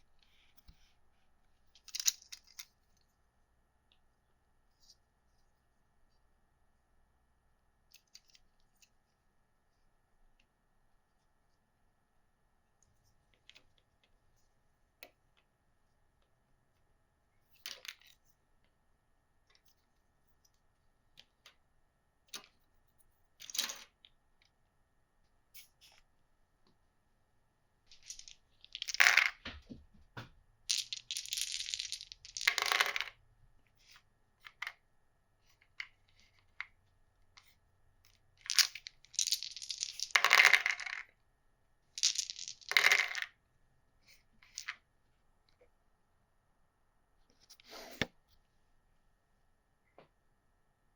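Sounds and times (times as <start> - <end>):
game pieces clattering: 27.9 - 29.4, 30.7 - 33.2, 38.4 - 41.0, 42.0 - 43.3
game pieces clicking: 27.9 - 29.4, 30.7 - 33.1, 38.4 - 41.0, 42.0 - 43.2.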